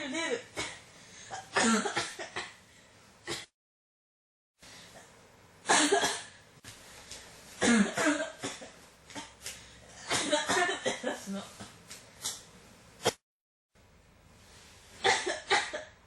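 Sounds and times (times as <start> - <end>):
person coughing: 0.6 - 2.6, 3.3 - 3.5, 5.7 - 6.4, 7.6 - 9.4, 10.0 - 11.7, 15.0 - 16.0.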